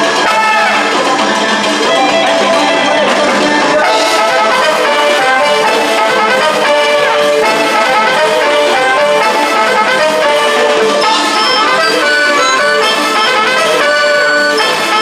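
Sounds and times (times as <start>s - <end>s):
instrumental band music: 0.0s - 15.0s.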